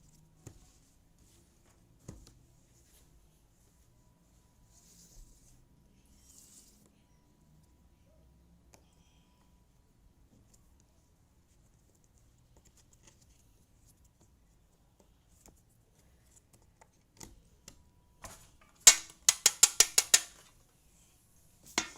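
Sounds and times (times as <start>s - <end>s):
puzzle pieces clicking: 18.9s - 20.4s.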